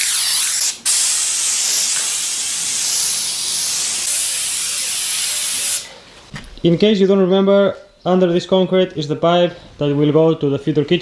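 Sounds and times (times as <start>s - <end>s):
bright spraying hiss: 0.0s - 6.0s.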